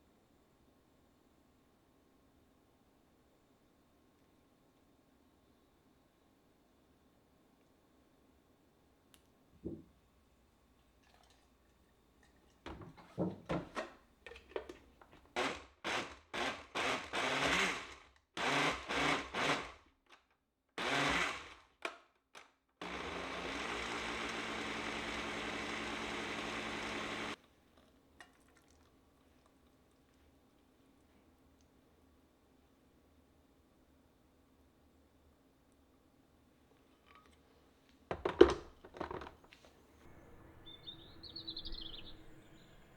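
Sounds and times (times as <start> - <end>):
small electric motor running: 22.8 - 27.4.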